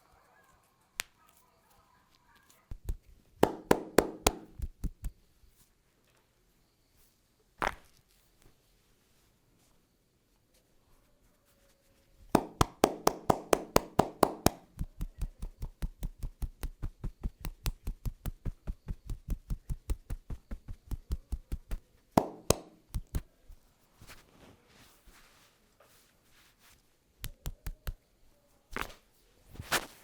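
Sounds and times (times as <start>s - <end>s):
hands slapping body in massage: 2.7s - 5.2s, 12.3s - 23.3s, 27.2s - 28.0s, 28.7s - 29.0s, 29.6s - 30.0s.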